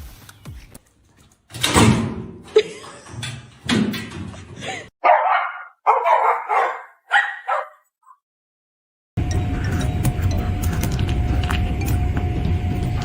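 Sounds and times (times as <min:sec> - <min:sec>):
dog barking: 0:05.0 - 0:08.2.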